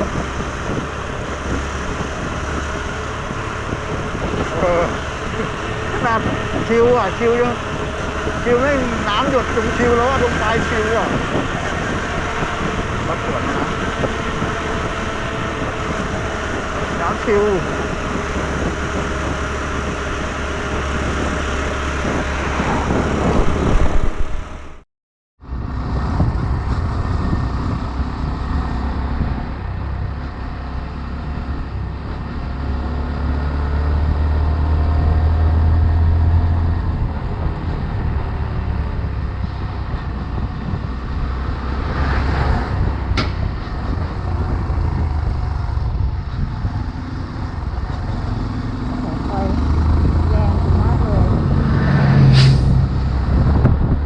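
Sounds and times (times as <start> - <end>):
road noise: 0.0 - 24.8, 25.4 - 54.0
motorcycle engine: 25.6 - 54.0.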